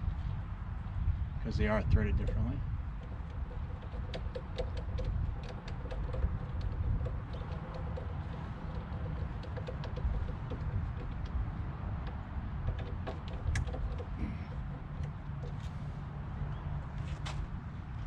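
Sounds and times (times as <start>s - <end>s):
steady low rumble: 0.0s - 18.0s
light clicks and ticks: 3.0s - 15.7s.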